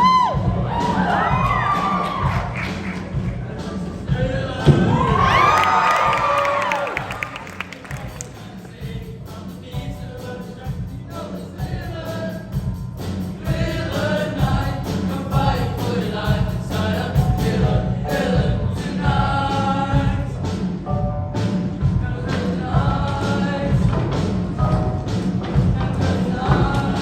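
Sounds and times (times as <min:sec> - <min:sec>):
girls' choir singing: 0:00.6 - 0:09.6, 0:25.6 - 0:27.0.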